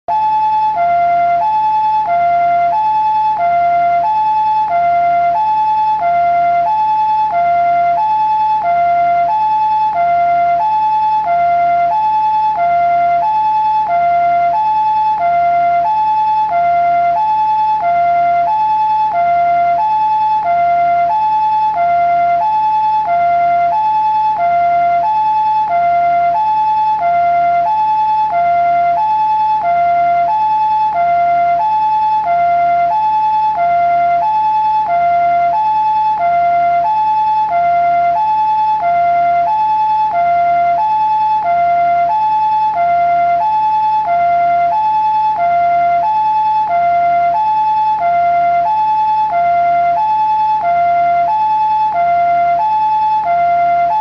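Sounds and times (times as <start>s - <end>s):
two-tone ambulance siren: 0.1s - 54.0s.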